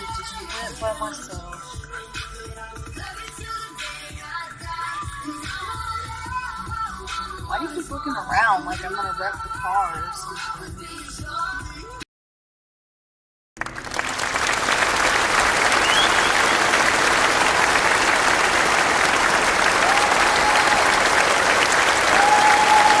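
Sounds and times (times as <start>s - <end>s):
crowd applause: 13.6s - 23.0s
held whistle tones: 15.7s - 17.0s.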